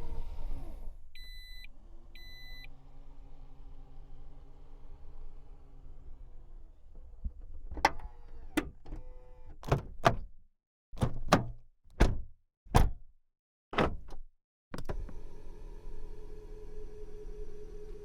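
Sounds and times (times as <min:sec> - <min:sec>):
latches clicking and clunking: 0:11.0 - 0:13.0.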